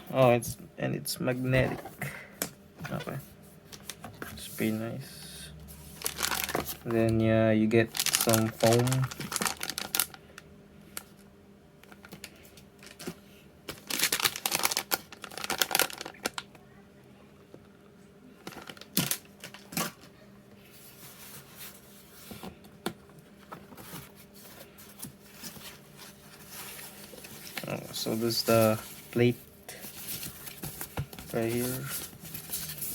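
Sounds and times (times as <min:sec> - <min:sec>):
crinkly packaging rustling: 0:05.7 - 0:10.2, 0:11.0 - 0:16.6, 0:18.4 - 0:20.1, 0:23.1 - 0:32.9.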